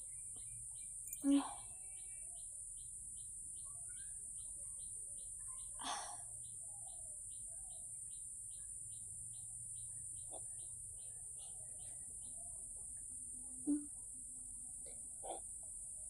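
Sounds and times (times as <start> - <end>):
faint high chirp: 0.0 - 7.9.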